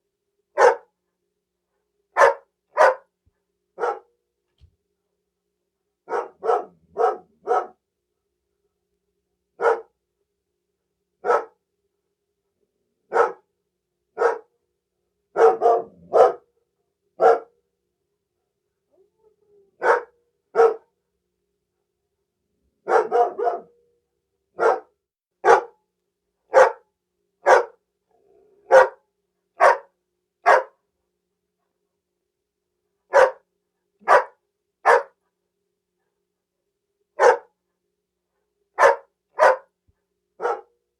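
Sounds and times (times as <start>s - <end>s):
dog barking: 0.6s - 0.9s, 2.1s - 3.1s, 3.8s - 4.2s, 6.0s - 7.8s, 9.6s - 10.0s, 11.2s - 11.6s, 13.1s - 13.5s, 14.2s - 14.5s, 15.3s - 16.5s, 17.2s - 17.6s, 19.8s - 20.9s, 22.8s - 23.8s, 24.6s - 25.8s, 26.5s - 27.8s, 28.6s - 29.0s, 29.6s - 30.8s, 33.1s - 35.2s, 37.2s - 37.6s, 38.8s - 39.8s, 40.4s - 40.8s.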